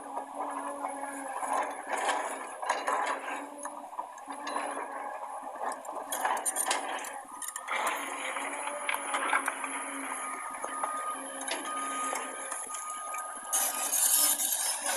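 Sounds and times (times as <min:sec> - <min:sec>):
excavator engine hum: 0:00.0 - 0:14.9
metallic clanking and scraping: 0:13.5 - 0:14.9.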